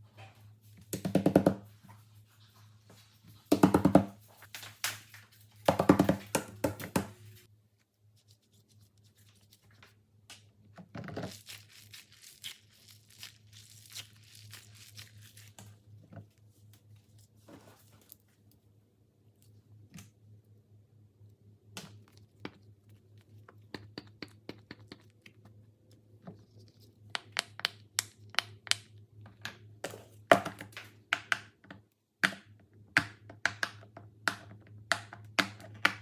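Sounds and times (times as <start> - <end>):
packaging crinkling: 11.2 - 16.0.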